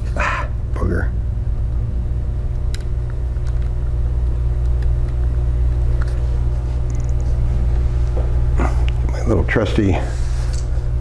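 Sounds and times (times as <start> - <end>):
low hum: 0.0 - 11.0
small parts clicking: 2.5 - 3.9.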